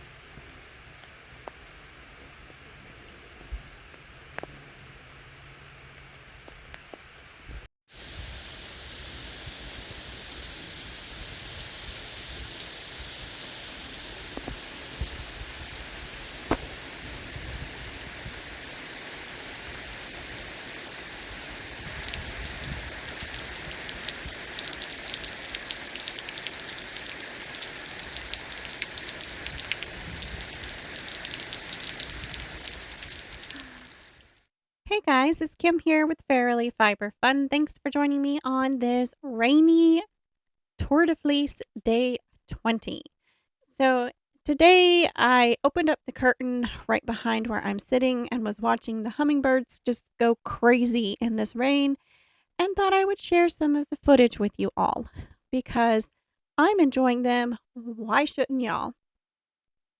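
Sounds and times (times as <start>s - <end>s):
steady rain falling: 0.0s - 34.4s.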